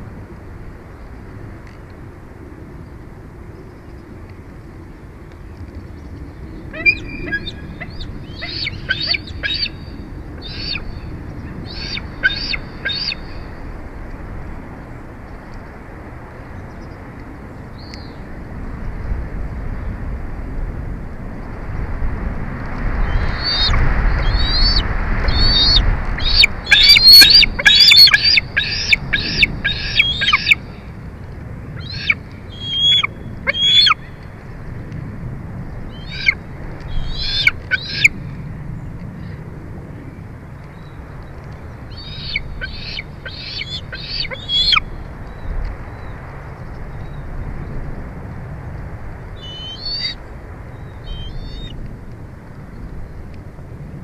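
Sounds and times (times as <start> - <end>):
low rushing noise: 0.0 - 54.0
eagle chirping calls: 6.7 - 13.4, 23.0 - 30.8, 31.8 - 34.1, 35.9 - 38.1, 41.9 - 44.9, 49.4 - 50.2, 50.9 - 51.8.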